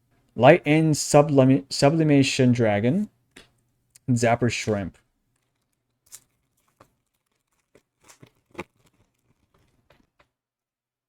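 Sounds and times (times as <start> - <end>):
foil wrapper crinkling and tearing: 5.3 - 10.3.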